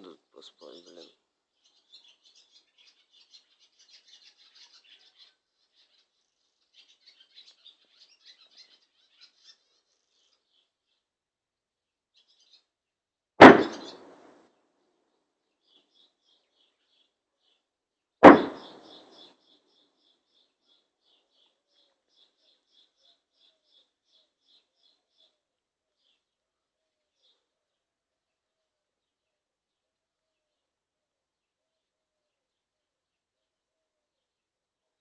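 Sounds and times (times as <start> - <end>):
birds chirping faintly: 0.0 - 35.0
loud explosions: 13.4 - 14.3, 18.2 - 19.1.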